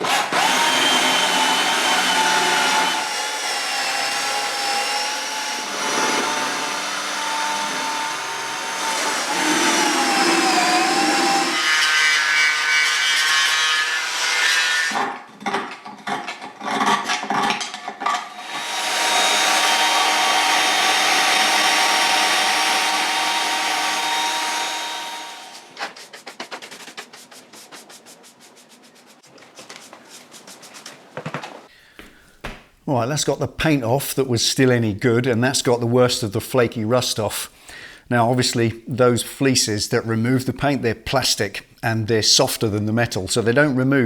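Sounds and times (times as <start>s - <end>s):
power tool scouring metal: 0.0s - 15.2s, 16.7s - 25.8s.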